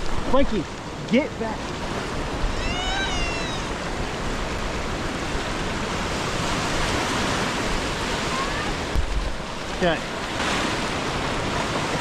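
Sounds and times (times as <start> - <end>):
surf: 0.0 - 12.0
wind: 0.0 - 12.0
high wavering cry: 2.4 - 3.9.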